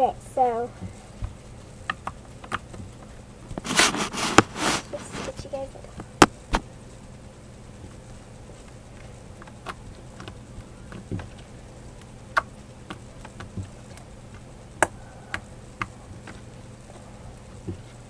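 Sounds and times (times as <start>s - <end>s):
low electrical hum: 0.0s - 18.0s
light clicks and taps: 7.8s - 18.0s.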